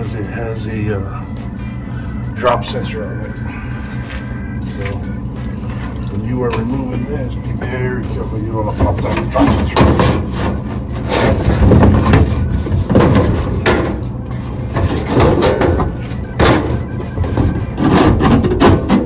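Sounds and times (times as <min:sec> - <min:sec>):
steady low hum: 0:00.0 - 0:19.0
metal clanks and rattles: 0:04.0 - 0:19.0.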